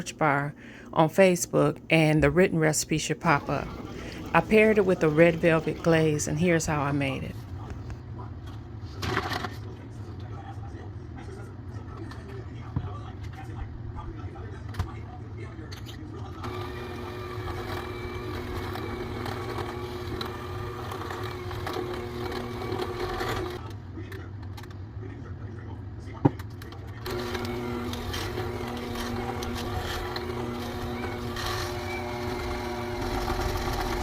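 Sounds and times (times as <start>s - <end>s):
electric mixer running: 3.3s - 7.2s, 16.5s - 23.6s, 27.1s - 34.0s.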